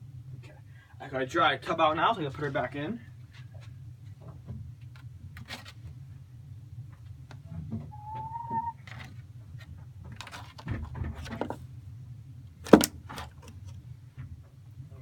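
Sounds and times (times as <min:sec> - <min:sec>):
low hum: 0:07.8 - 0:08.8
rustling and knocking in tub: 0:10.1 - 0:11.7.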